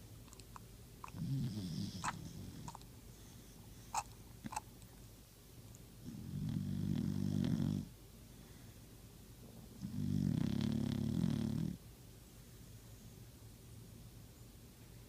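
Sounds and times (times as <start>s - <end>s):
dog snoring: 1.0s - 2.8s, 6.0s - 7.9s, 9.8s - 11.8s.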